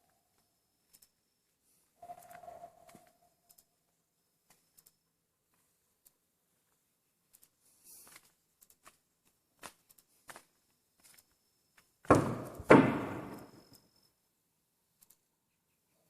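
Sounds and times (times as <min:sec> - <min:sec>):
faint ticks and clicks: 0:00.0 - 0:12.0, 0:14.9 - 0:16.0
loud ringing knocks: 0:12.1 - 0:13.6.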